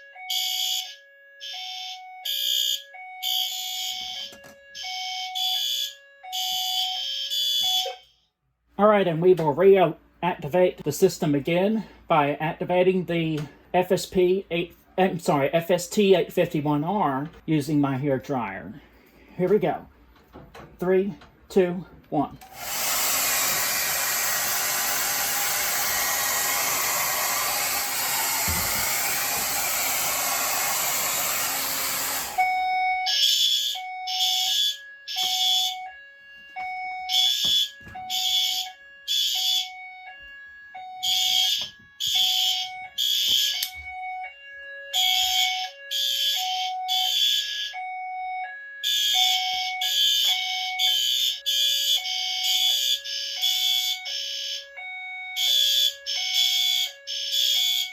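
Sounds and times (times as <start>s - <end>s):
fire alarm horns: 0.0s - 57.9s
hair dryer blowing: 22.5s - 32.5s.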